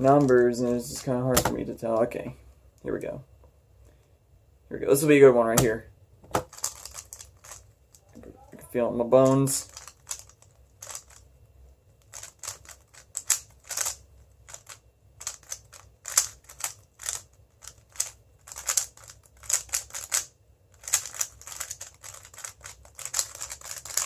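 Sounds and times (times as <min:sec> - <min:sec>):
puzzle cube plastic clicks: 0:06.4 - 0:08.0, 0:09.2 - 0:11.2, 0:12.0 - 0:24.0.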